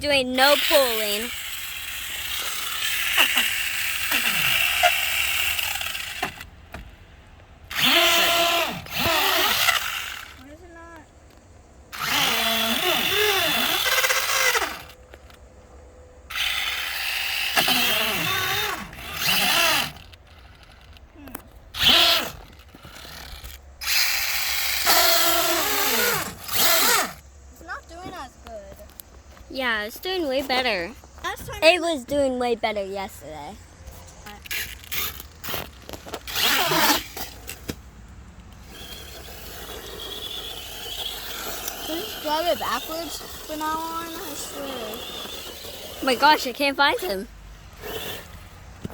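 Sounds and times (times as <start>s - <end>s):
electric motor whining: 0.0s - 6.9s, 7.7s - 10.6s, 11.3s - 15.4s, 16.3s - 27.2s, 34.4s - 37.6s, 38.5s - 48.9s.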